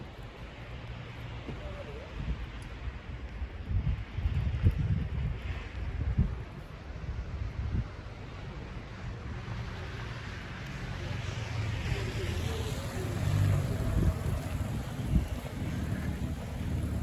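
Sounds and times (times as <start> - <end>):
wind rumble on microphone: 0.0 - 17.0
tyres hissing through wet snow: 8.5 - 17.0.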